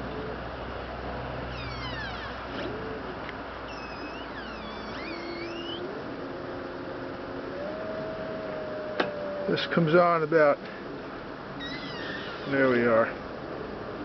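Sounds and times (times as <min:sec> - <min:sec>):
low motor whine: 0:00.0 - 0:11.4
motor chirping squeals: 0:01.5 - 0:02.8, 0:03.6 - 0:05.9, 0:11.6 - 0:12.8.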